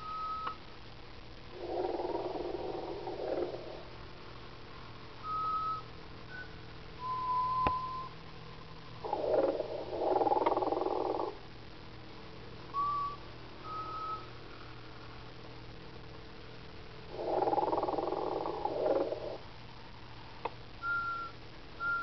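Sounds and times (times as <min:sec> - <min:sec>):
whistled notes: 0:05.2 - 0:08.2, 0:12.8 - 0:14.3, 0:20.8 - 0:22.0.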